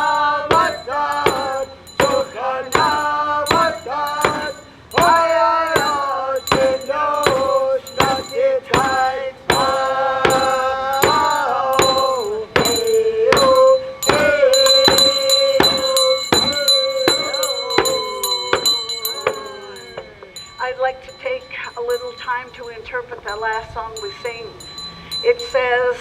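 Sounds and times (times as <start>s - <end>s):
person singing: 0.0s - 20.3s
hand percussion beat: 0.0s - 25.6s.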